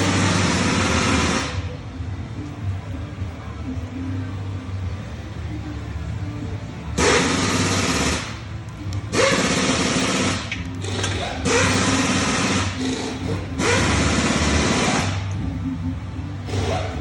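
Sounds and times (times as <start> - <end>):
engine starter cranking: 9.1 - 15.4.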